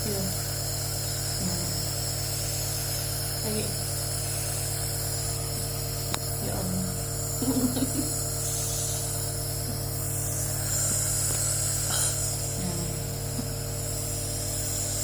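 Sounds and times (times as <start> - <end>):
nebulizer electric hum: 0.0 - 15.0
hiss of spray: 7.4 - 9.3, 10.2 - 12.6.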